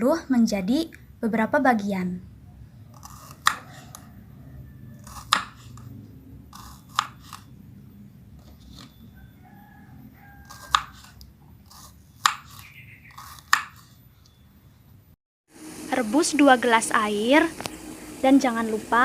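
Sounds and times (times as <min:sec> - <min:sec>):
knife cutting fruit: 0:02.9 - 0:04.2, 0:05.0 - 0:07.6, 0:08.4 - 0:09.0, 0:10.3 - 0:14.1.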